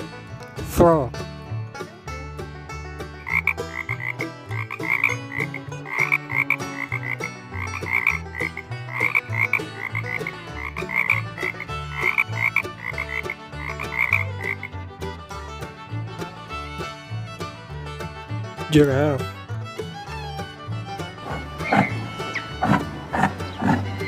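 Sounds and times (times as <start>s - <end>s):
frog croaking: 3.2s - 14.6s, 21.2s - 24.0s.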